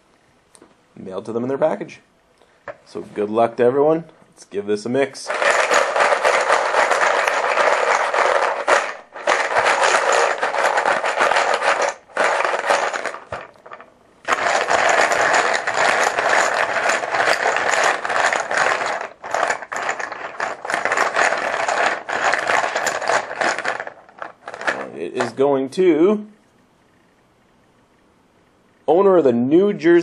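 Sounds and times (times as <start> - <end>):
plastic chips clattering in bucket: 5.3 - 25.4.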